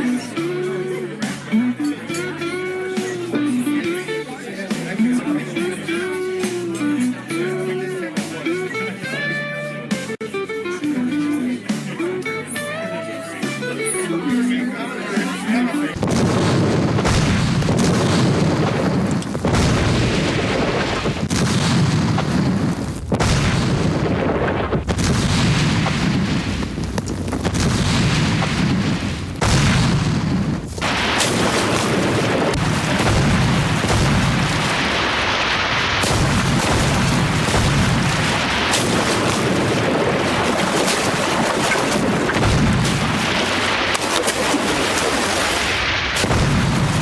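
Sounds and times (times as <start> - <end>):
explosions and gunfire effects: 16.0 - 47.0.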